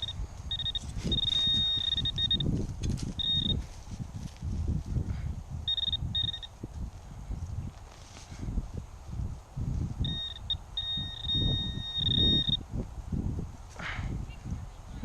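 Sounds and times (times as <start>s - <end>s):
metal detector beeping: 0.0s - 2.5s, 3.1s - 3.6s, 5.7s - 6.6s, 10.0s - 12.6s.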